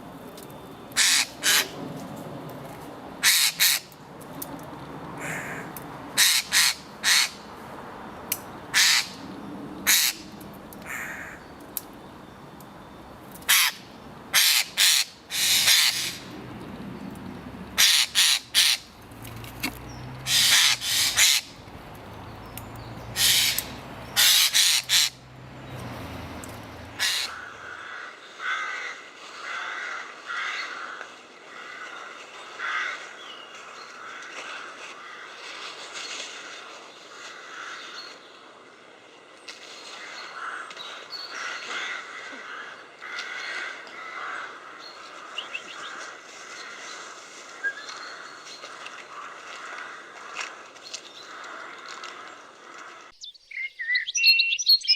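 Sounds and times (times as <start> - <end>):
jay screeching calls: 1.0 - 1.7, 8.7 - 9.2, 17.8 - 18.9, 20.3 - 21.5, 23.2 - 25.2, 27.0 - 28.0
soft repeated bird calls: 39.4 - 54.9.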